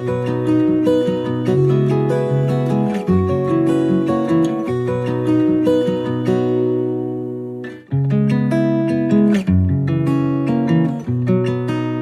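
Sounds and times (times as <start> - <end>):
plucked acoustic guitar music: 0.0 - 12.0.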